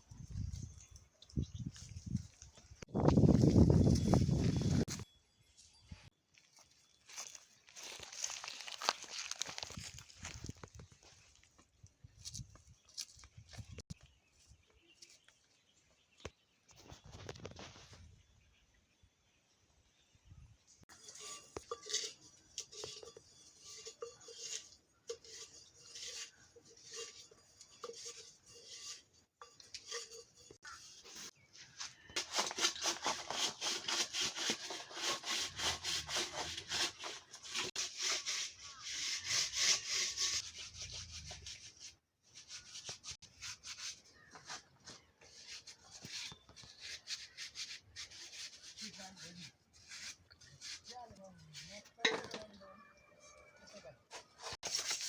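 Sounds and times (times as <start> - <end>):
utensil scraping metal pot: 20.8 - 52.6, 54.1 - 55.0.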